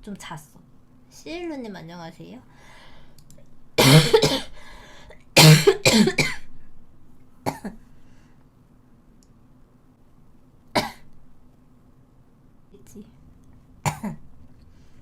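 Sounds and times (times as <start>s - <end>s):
woman coughing: 3.8s - 4.6s, 5.4s - 6.5s, 7.5s - 7.8s, 10.8s - 11.1s, 13.8s - 14.2s.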